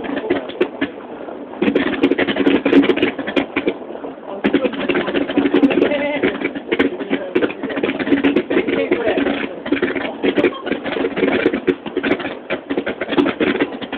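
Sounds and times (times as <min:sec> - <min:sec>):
sharp clicks and pops: 0:00.0 - 0:13.9
crowd talking: 0:04.3 - 0:11.1.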